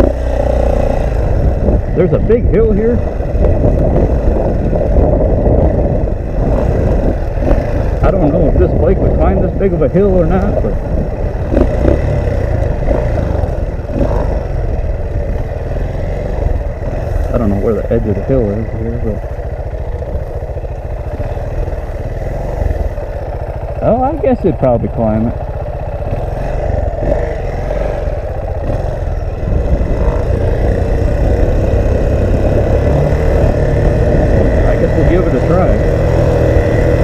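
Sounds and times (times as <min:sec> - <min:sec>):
motorcycle engine running: 0:00.0 - 0:37.0
wind buffeting microphone: 0:00.0 - 0:37.0.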